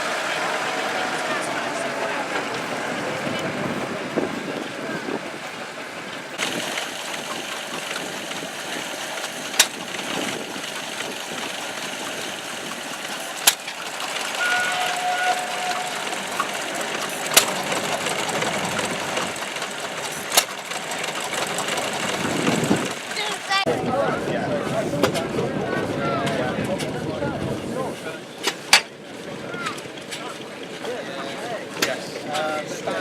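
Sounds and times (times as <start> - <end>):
engine running: 0.0 - 33.0
whistle-like tone: 14.4 - 16.0.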